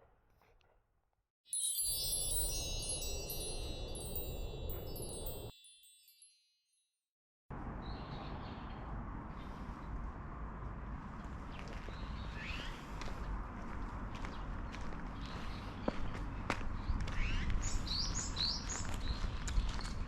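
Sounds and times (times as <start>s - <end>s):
high chime tones: 1.5s - 6.5s.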